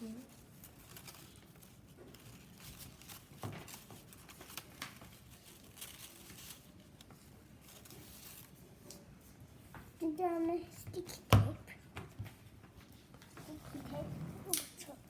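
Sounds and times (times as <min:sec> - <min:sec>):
paper rustling and crinkling: 0:00.0 - 0:09.1.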